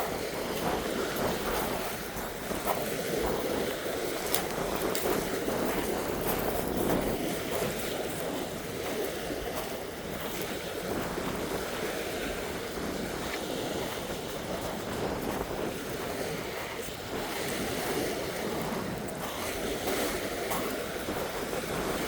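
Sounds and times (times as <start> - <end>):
waves washing on rocky shore: 0.0 - 22.0
wind buffeting microphone: 0.0 - 22.0.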